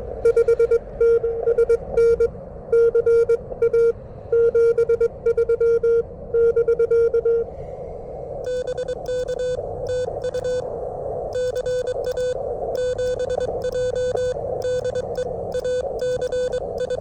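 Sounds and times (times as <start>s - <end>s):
morse code beeps: 0.2s - 7.4s, 8.5s - 10.6s, 11.4s - 17.0s
radio receiver hiss: 11.3s - 17.0s.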